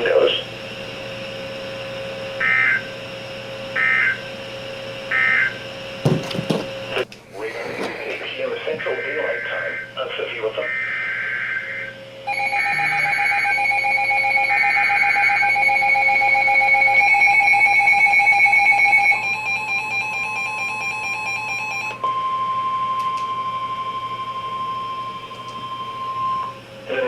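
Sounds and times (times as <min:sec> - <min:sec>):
steady warning alarm tone: 0:00.0 - 0:07.1, 0:08.3 - 0:27.0
pulsing alarm tone: 0:00.7 - 0:06.0, 0:08.8 - 0:10.0, 0:10.6 - 0:26.7.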